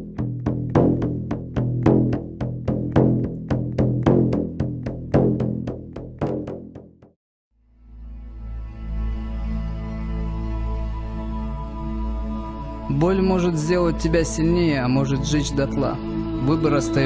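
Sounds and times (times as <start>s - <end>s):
short sharp repeated notes: 0.0s - 7.1s.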